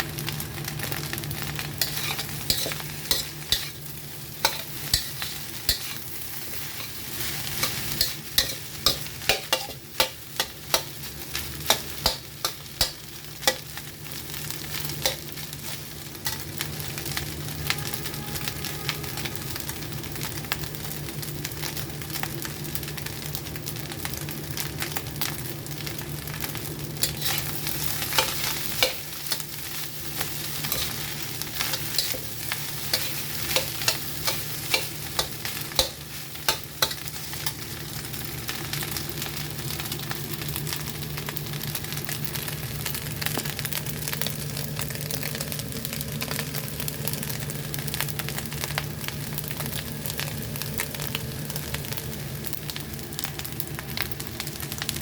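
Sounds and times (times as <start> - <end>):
rice sizzling in a pan: 0.0 - 55.0
spatula knocking and scraping pan: 1.8 - 3.8, 4.4 - 6.0, 7.6 - 11.0, 11.6 - 13.7, 30.6 - 37.6.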